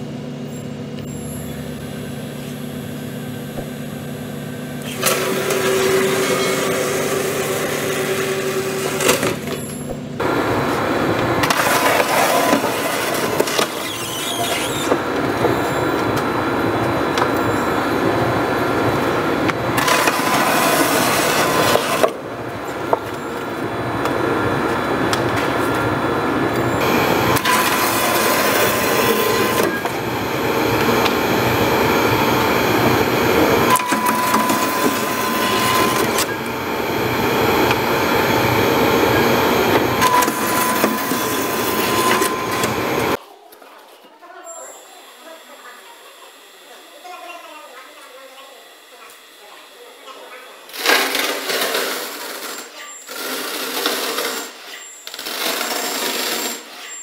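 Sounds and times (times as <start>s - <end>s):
machine running: 0.0s - 43.2s.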